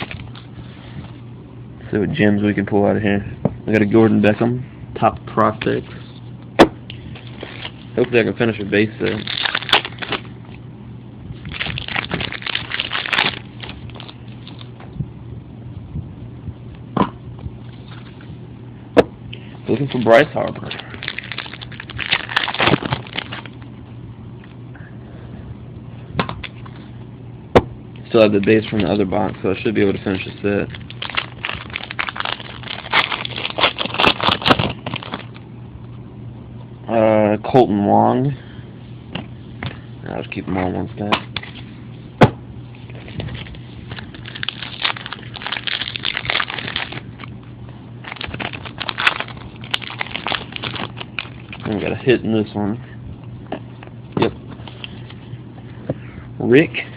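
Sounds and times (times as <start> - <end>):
wrapper crinkling being torn open: 0.0 - 0.5, 7.2 - 10.3, 11.4 - 14.8, 19.7 - 23.7, 28.4 - 35.4, 42.9 - 47.4, 48.0 - 52.2
low steady hum: 0.0 - 56.9
cards rustling: 28.4 - 35.4, 42.9 - 47.3, 48.0 - 52.0.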